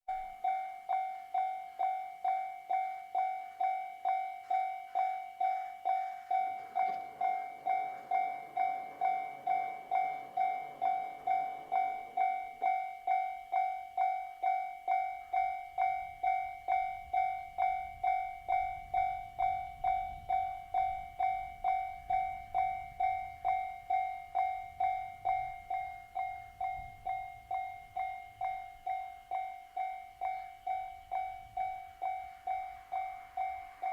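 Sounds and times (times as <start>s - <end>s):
level-crossing warning bell: 0.1s - 33.9s
railcar rumble: 0.1s - 33.9s.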